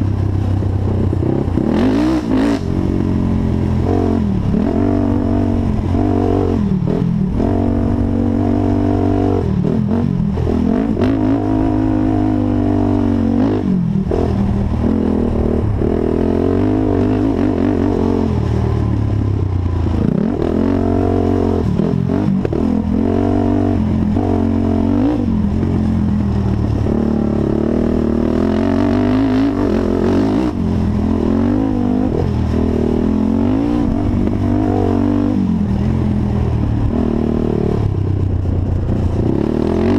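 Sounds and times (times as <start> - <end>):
quad engine revving: 0.8 - 39.9.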